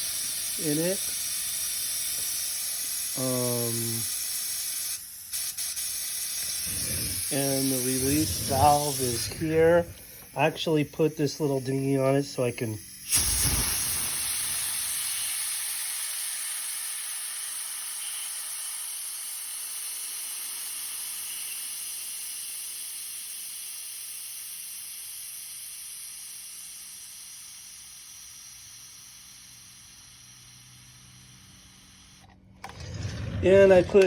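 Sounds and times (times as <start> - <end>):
compressed air hissing: 0.0 - 15.6, 27.4 - 34.0.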